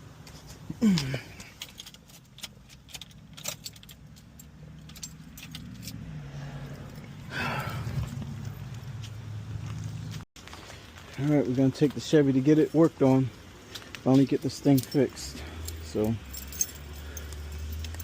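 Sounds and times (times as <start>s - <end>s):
keys jangling in ignition: 0.8s - 9.1s, 14.1s - 18.0s.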